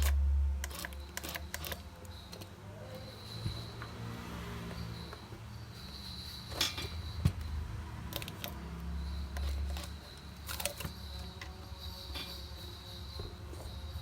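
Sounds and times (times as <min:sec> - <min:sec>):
sharp mechanical clicks: 0:00.0 - 0:02.5, 0:08.0 - 0:11.5
tape-cutting machine hum: 0:00.0 - 0:02.6, 0:08.0 - 0:12.4.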